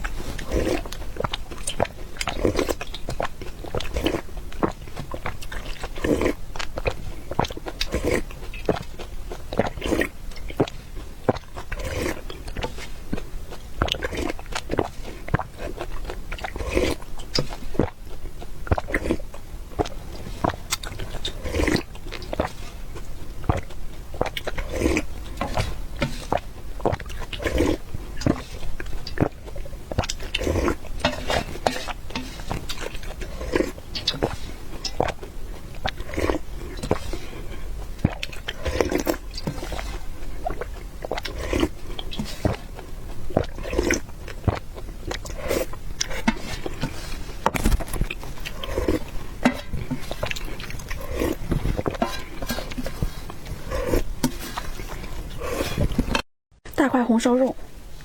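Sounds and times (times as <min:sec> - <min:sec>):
wet chewing and slurping: 0:00.0 - 0:56.2.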